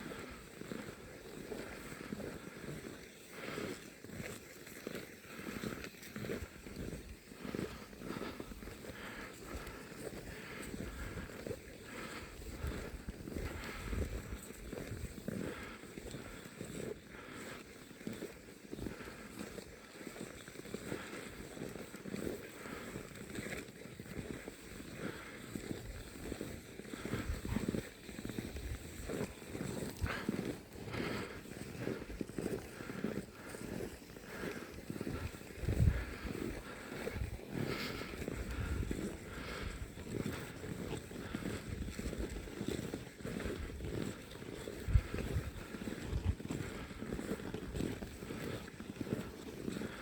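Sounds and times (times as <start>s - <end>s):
footsteps crunching in snow: 0.0s - 50.0s
wind buffeting microphone: 35.6s - 36.3s, 44.9s - 45.6s.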